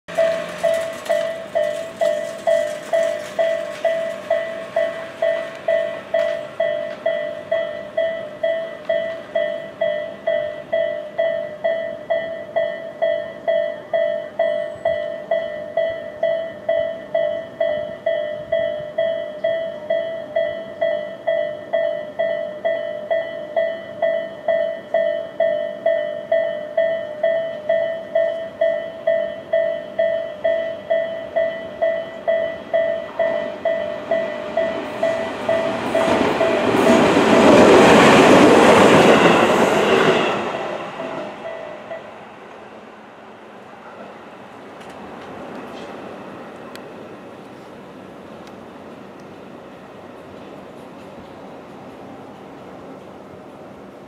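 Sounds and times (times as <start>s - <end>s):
railroad crossing electronic bell: 0.1s - 42.9s
passing train: 0.1s - 54.0s.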